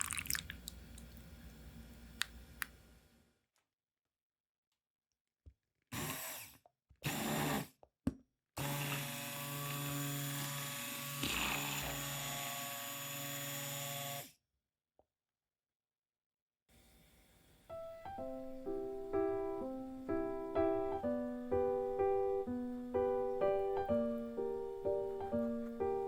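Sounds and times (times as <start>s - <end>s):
electric hand mixer whirring: 8.6s - 14.3s.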